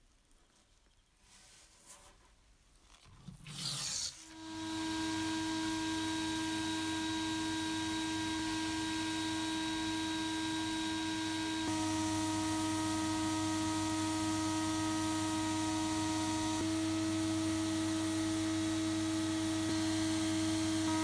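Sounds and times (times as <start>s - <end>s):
electric machine humming: 4.3s - 21.0s.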